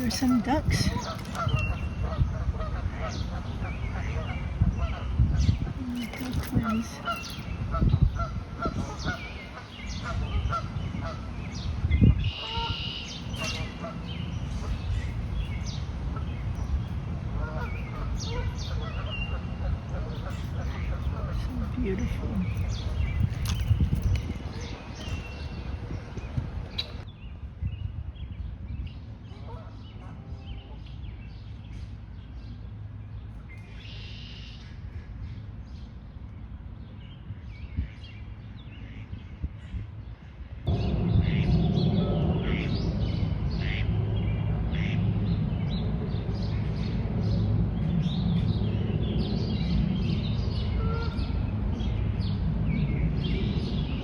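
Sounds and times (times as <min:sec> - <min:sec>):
young birds peeping: 0:00.0 - 0:27.0
steady low rumble: 0:00.0 - 0:54.0
waterfowl honking calls: 0:12.3 - 0:14.8, 0:17.4 - 0:21.6, 0:43.6 - 0:43.9, 0:44.7 - 0:45.0, 0:50.8 - 0:51.3
low thumps: 0:40.7 - 0:44.8.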